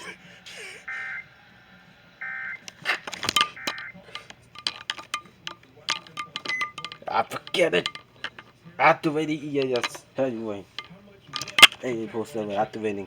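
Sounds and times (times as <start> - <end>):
sharp clicks and knocks: 2.6 - 8.6, 9.6 - 10.1, 10.7 - 11.9.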